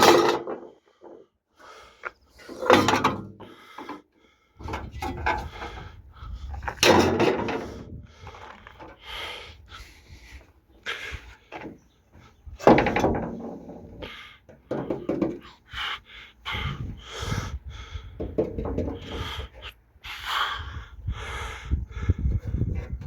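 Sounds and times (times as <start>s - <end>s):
objects knocking and clattering: 0.0s - 0.7s, 12.6s - 15.4s, 18.2s - 19.2s.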